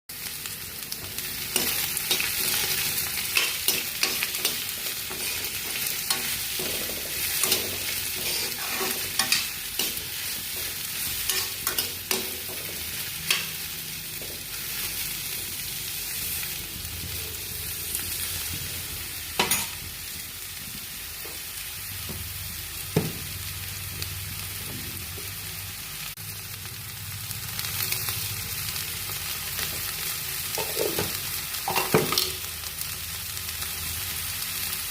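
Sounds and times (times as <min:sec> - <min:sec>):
food sizzling in a pan: 0:00.1 - 0:34.9
utensil scraping a pan: 0:03.4 - 0:10.6.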